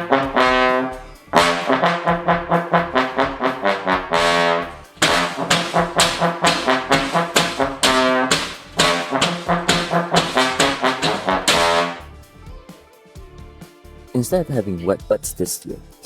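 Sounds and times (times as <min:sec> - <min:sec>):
brass band playing: 0:00.0 - 0:12.1.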